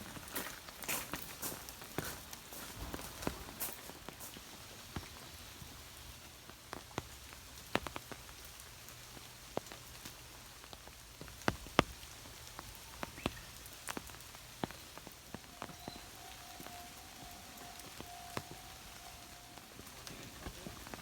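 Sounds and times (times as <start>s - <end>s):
rain pattering: 0.0s - 21.0s
heavy raindrops ticking: 6.2s - 21.0s.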